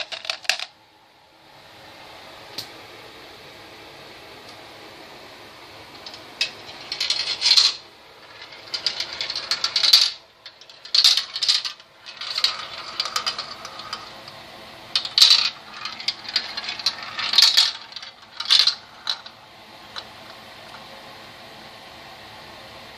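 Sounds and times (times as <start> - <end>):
marbles rattling down a run: 6.0 - 14.3, 15.0 - 19.4.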